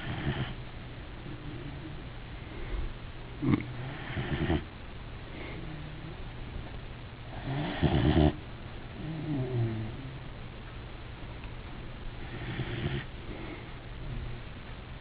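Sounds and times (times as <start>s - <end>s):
dog snoring: 0.0s - 0.6s, 3.4s - 4.7s, 7.3s - 8.4s, 9.0s - 10.2s, 12.2s - 13.5s.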